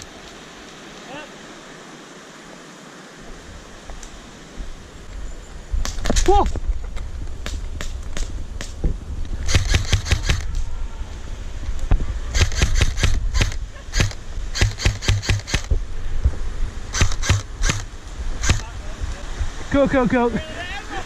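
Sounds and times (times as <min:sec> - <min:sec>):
airsoft guns firing: 0:09.5 - 0:10.6, 0:12.3 - 0:15.7, 0:16.9 - 0:18.7.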